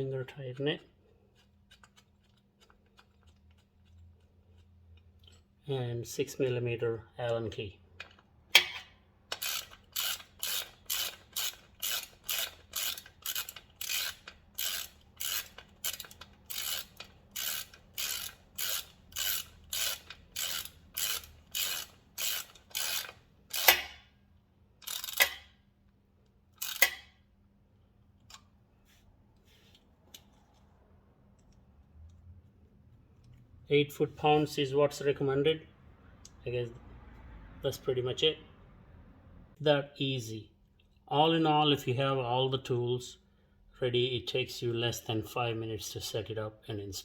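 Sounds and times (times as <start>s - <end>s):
ratchet clicking: 8.0s - 24.1s, 24.8s - 25.6s, 26.5s - 27.2s.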